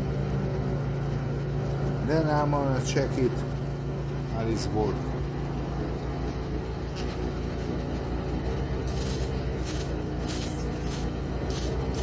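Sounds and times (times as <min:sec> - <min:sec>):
low rhythmic machine hum: 0:00.0 - 0:12.0
air blasts hissing: 0:08.9 - 0:12.0.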